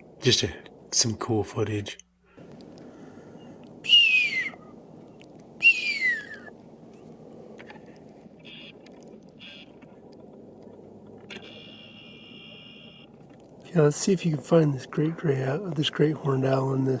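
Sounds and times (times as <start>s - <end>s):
harsh bird calls: 2.8s - 10.0s.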